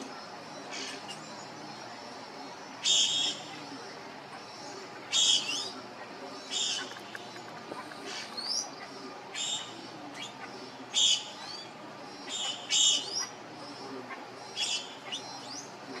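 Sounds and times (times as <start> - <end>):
birds chirping and whistling: 2.8 - 3.7, 5.1 - 5.8, 9.4 - 13.8, 14.4 - 16.0.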